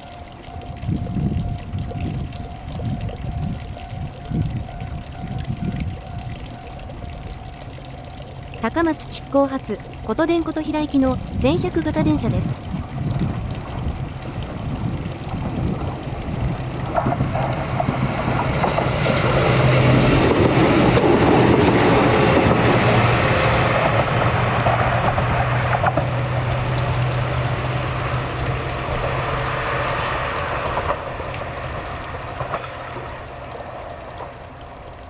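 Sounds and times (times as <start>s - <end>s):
train low hum: 0.0s - 35.0s
train wheels clattering on rails: 15.3s - 34.4s.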